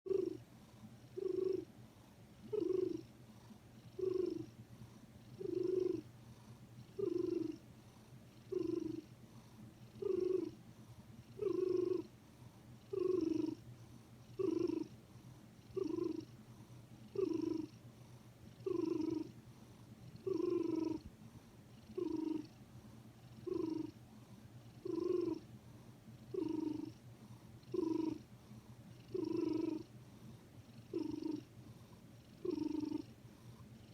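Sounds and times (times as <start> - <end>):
cat breathing softly: 0.2 - 33.9.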